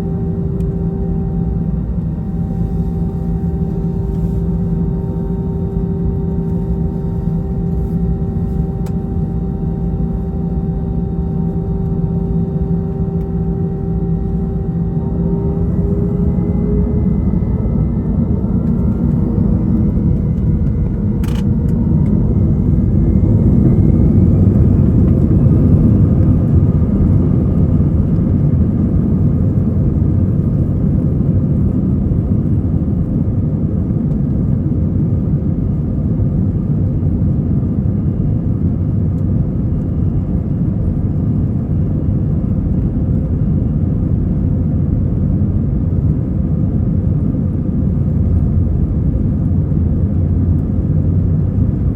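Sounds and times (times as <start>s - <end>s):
faint rising whine: 0.0s - 31.7s
jet engine rumble in cabin: 0.0s - 51.9s.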